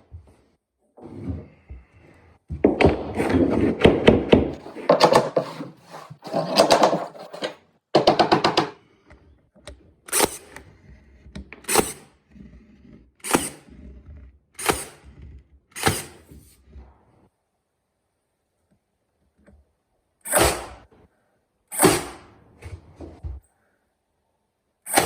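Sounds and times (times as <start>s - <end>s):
flooring being knocked into place: 2.5s - 8.8s.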